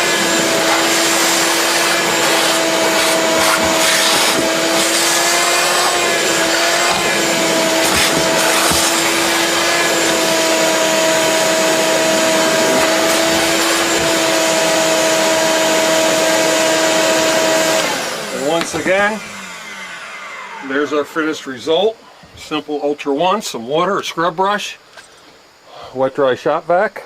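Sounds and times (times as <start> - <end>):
suction air rushing: 0.0 - 16.0
shop vac motor whine: 0.0 - 21.7.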